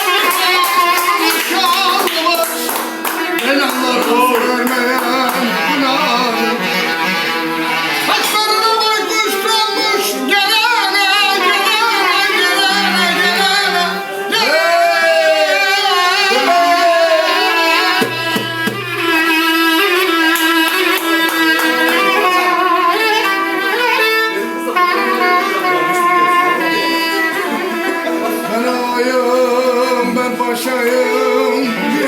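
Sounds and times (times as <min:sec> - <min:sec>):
instrumental accompaniment: 0:00.0 - 0:32.0
person singing ornamented melody: 0:03.2 - 0:06.8.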